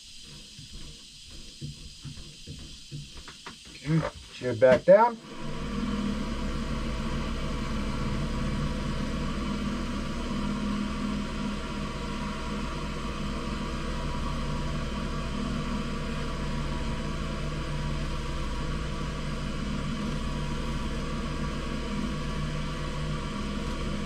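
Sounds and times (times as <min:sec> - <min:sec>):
wood lathe running: 0:05.3 - 0:24.0.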